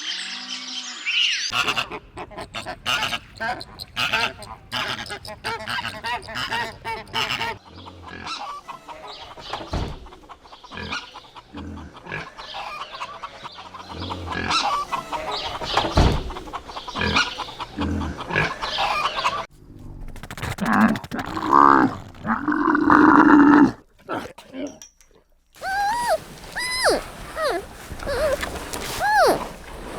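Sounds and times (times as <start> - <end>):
chickens clucking: 1.5 - 7.6, 25.6 - 29.5.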